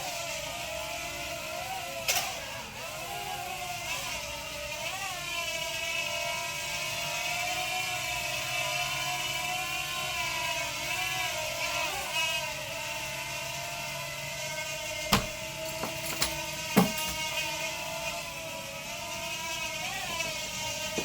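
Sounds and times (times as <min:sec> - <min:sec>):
sharp knock: 0:15.1 - 0:15.4.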